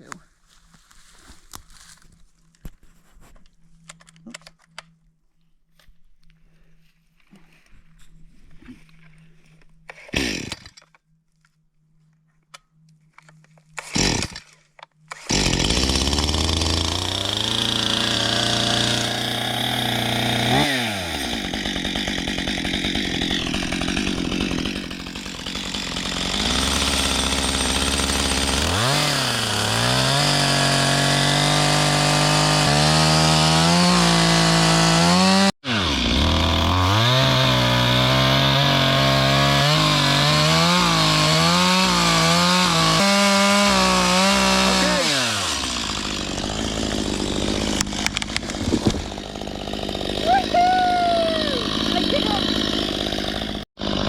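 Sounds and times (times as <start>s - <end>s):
chainsaw cutting into a tree: 9.9s - 10.8s, 13.8s - 54.0s.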